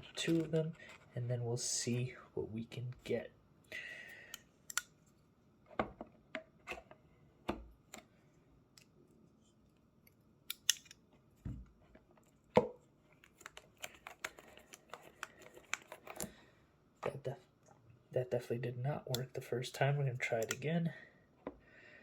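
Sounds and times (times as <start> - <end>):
packaging clicks and snips: 10.5 - 11.0, 13.2 - 16.4.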